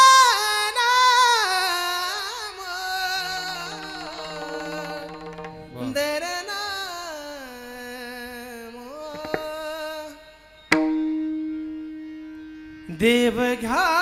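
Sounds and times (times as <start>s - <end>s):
ringing note: 3.1s - 6.2s
sharp percussive strike: 3.2s - 6.1s.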